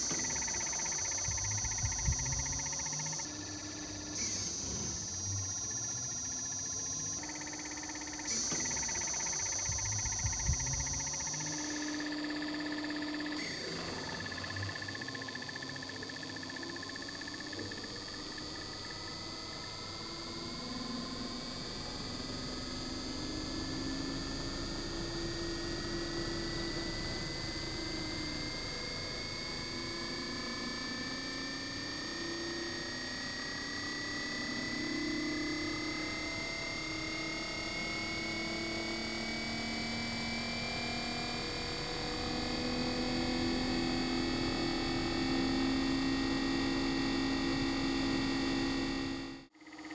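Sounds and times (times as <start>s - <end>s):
wavering low hum: 0.0s - 11.8s
compressor whine rising in pitch: 0.0s - 49.9s.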